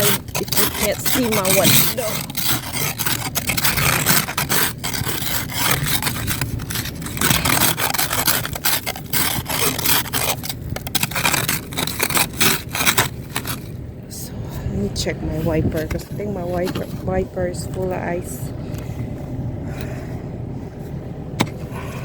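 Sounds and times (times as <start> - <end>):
ice scraped off car window: 0.0 - 13.8, 15.3 - 18.0.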